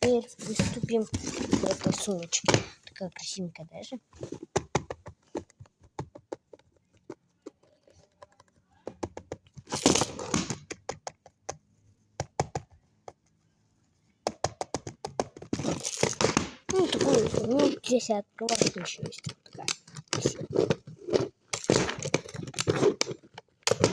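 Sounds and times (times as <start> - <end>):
handbag clicks and taps: 12.2 - 12.7, 14.3 - 17.7, 18.5 - 23.9.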